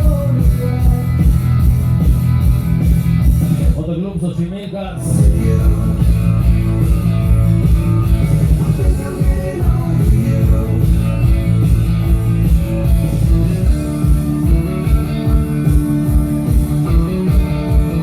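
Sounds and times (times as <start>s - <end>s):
rock music with guitar and drums: 0.0s - 18.0s.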